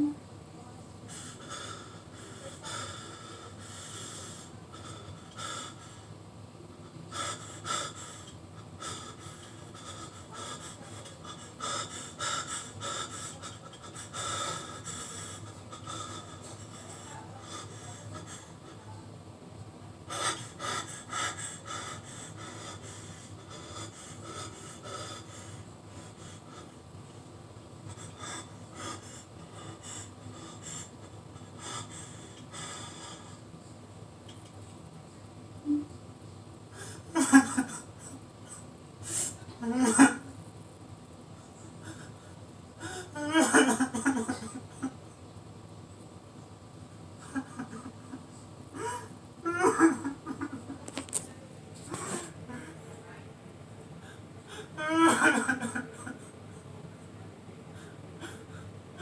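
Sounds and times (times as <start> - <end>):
steady background hum: 0.0 - 59.0
person breathing hard: 1.1 - 6.2, 7.1 - 19.0, 20.1 - 26.9, 27.8 - 33.4, 36.7 - 40.0, 41.5 - 43.3, 48.8 - 50.5, 54.0 - 56.4, 57.7 - 59.0.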